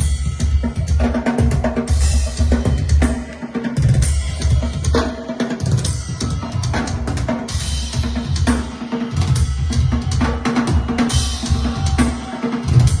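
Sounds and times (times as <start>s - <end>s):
steady bass line: 0.0s - 5.1s.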